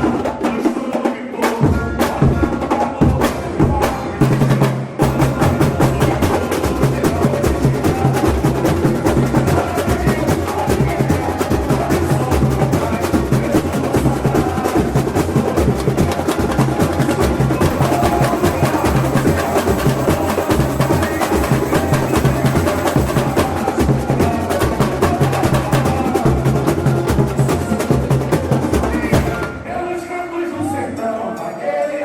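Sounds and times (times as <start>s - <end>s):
rattling snare drums: 0.0s - 29.9s
samba drums playing: 0.0s - 30.0s
deep bass drums: 5.0s - 29.5s.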